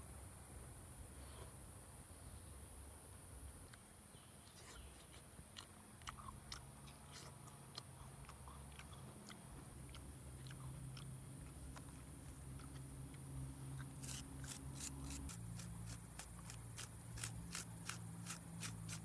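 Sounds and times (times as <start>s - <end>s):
person chewing crunchy food: 4.7s - 19.0s.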